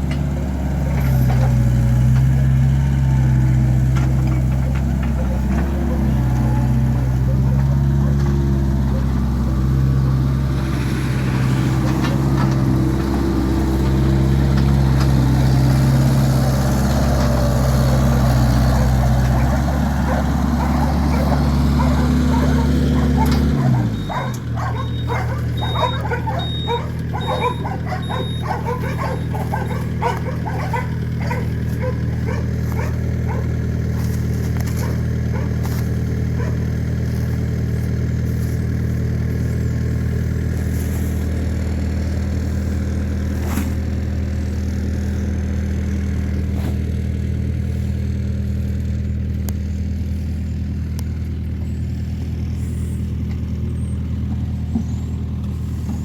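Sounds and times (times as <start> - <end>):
engine running: 0.0 - 56.0
dog yipping and whining: 18.8 - 34.1, 34.8 - 35.6, 36.4 - 36.6.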